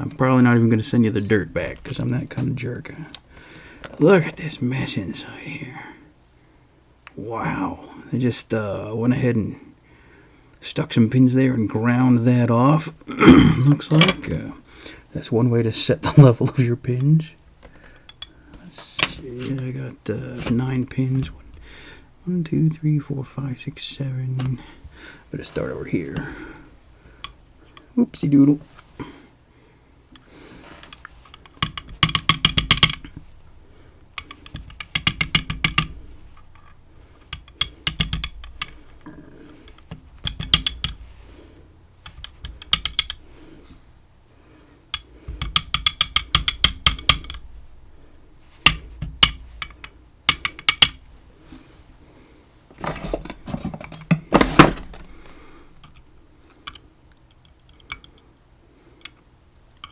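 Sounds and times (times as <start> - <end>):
lock parts clicking and rattling: 1.1 - 2.5, 13.6 - 14.4, 30.8 - 41.2, 42.0 - 43.3, 44.9 - 51.1, 52.7 - 58.3.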